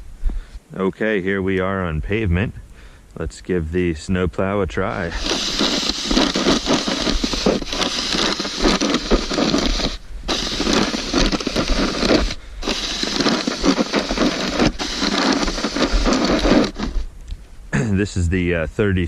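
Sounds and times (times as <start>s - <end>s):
shovel scraping snow on pavement: 4.9s - 17.1s.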